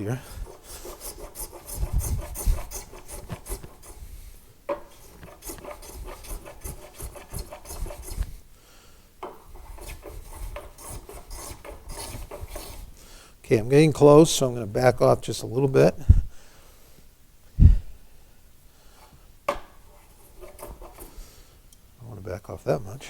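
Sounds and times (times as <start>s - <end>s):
hand plane shaving wood: 0.0s - 4.1s, 4.9s - 8.4s, 9.6s - 12.9s, 20.0s - 21.2s.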